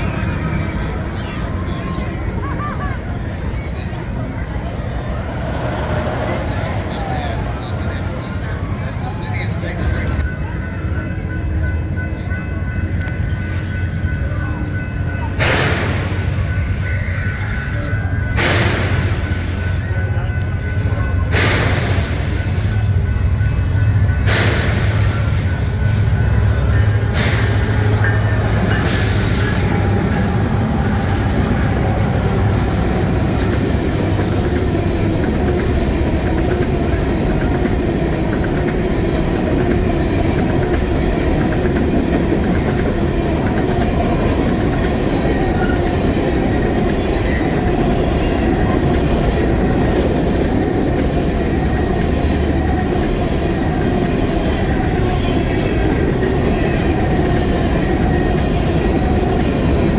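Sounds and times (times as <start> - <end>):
train wheels clicking over rails: 12.9 - 59.9.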